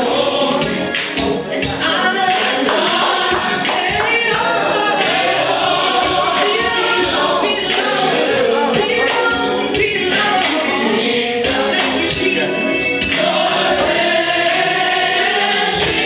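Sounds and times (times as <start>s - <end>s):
gospel choir singing: 0.0s - 16.0s
instrumental backing: 0.0s - 16.0s
percussion hits: 0.9s - 8.2s, 13.0s - 14.2s, 15.5s - 16.0s.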